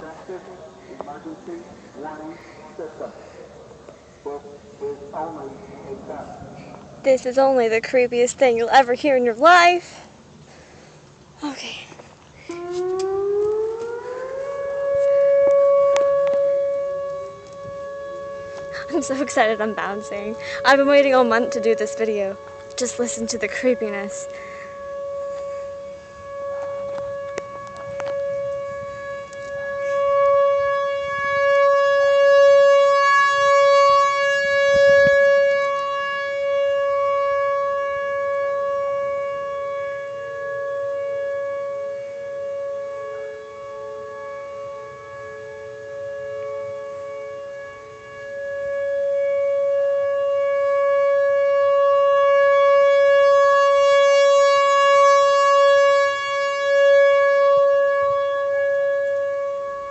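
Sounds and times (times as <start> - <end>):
tornado siren steady tone: 0.0 - 59.9
faint lower siren tone: 9.4 - 59.9.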